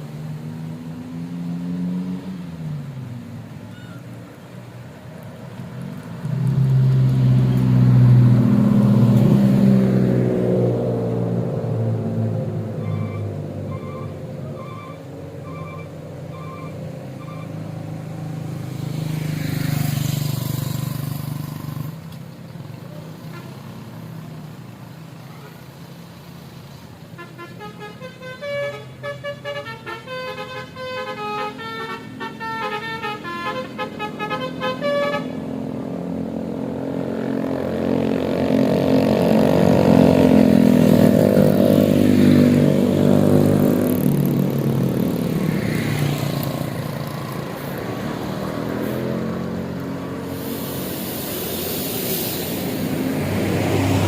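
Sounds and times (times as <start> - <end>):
large vehicle engine and tyres: 0.0 - 54.0
bus horn tooting a tune: 12.8 - 17.6, 27.2 - 35.5
short beeps: 12.8 - 17.6.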